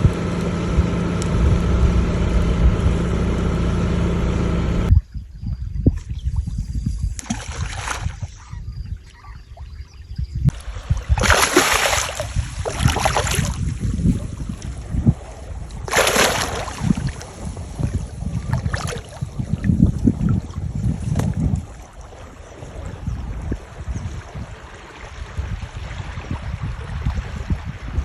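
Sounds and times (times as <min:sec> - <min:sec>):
steady low rumble: 0:00.0 - 0:05.2
wind on microphone: 0:00.0 - 0:28.0
water sounds: 0:06.4 - 0:28.0
water rushing and splashing: 0:10.5 - 0:19.6, 0:20.3 - 0:28.0.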